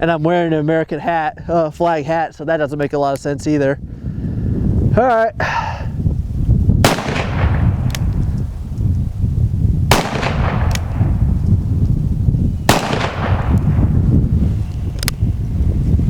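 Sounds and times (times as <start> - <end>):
steady low rumble: 5.9 - 16.0
revolver shots with echo: 6.9 - 8.0, 9.9 - 11.3, 12.7 - 14.0
faint click: 14.7 - 15.2.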